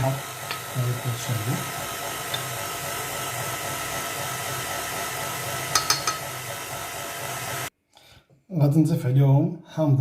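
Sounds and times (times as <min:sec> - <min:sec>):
metal spoon clinking bowl: 0:05.7 - 0:06.3.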